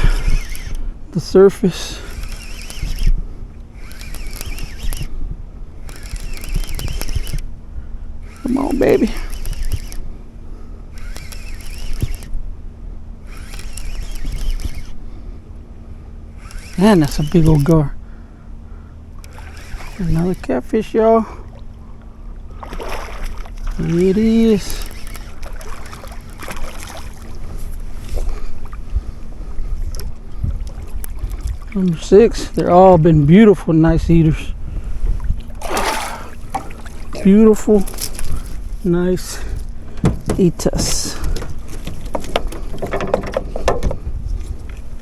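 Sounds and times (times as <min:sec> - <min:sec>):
wind buffeting microphone: 0:00.0 - 0:01.0, 0:22.2 - 0:45.0
fishing reel cranking whir: 0:00.0 - 0:15.5, 0:16.1 - 0:21.5, 0:22.5 - 0:45.0
steady low hum: 0:00.0 - 0:45.0
handling rustles and knocks: 0:35.5 - 0:45.0.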